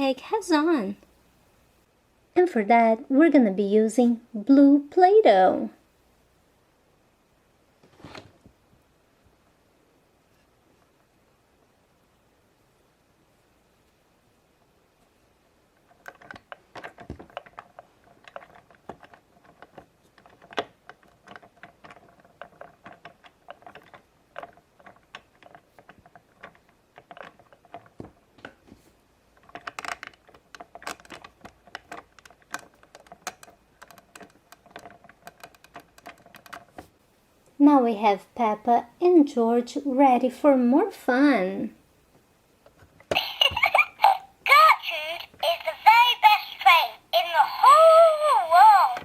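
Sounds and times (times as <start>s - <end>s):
hands working modelling dough: 13.3s - 46.3s
plastic toy figures clicking: 29.4s - 36.8s, 43.0s - 49.0s.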